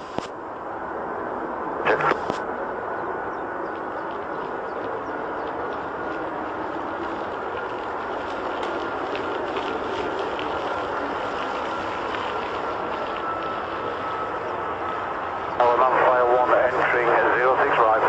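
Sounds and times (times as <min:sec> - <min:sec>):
faint falling whine: 0:00.0 - 0:18.0
jet engines roaring: 0:00.0 - 0:18.0.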